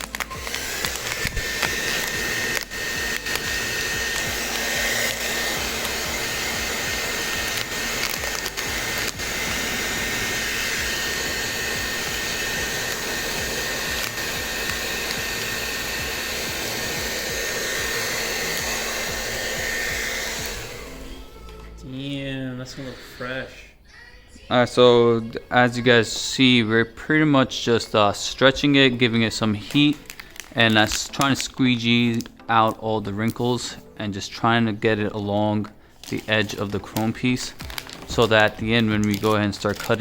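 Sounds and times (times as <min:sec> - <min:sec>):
heat gun blowing air: 0:00.0 - 0:21.6, 0:35.9 - 0:40.0.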